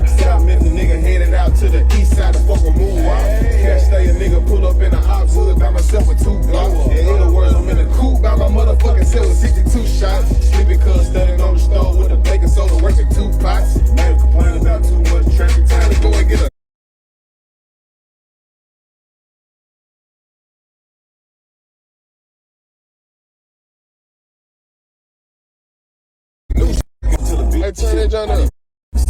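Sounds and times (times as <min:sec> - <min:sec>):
heavy bass line: 0:00.0 - 0:16.5, 0:26.5 - 0:29.0
person rapping: 0:00.0 - 0:16.5, 0:26.5 - 0:29.0.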